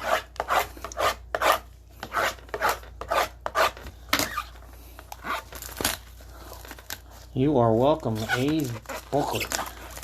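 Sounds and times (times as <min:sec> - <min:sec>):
scraping on cardboard: 0:00.0 - 0:04.6.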